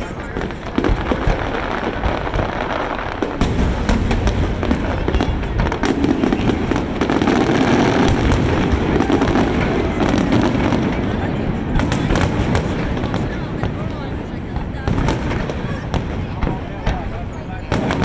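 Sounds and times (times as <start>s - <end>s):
fireworks bangs and crackles: 0.0s - 18.0s.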